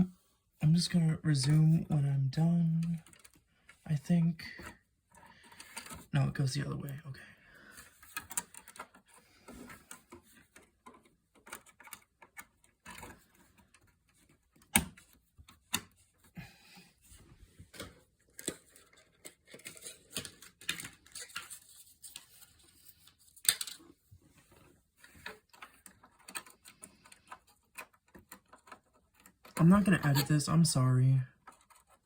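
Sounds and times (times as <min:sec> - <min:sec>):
memory sticks clicking and rustling: 0:02.6 - 0:03.8, 0:04.5 - 0:06.1, 0:07.7 - 0:16.4, 0:17.6 - 0:30.7, 0:31.3 - 0:32.0.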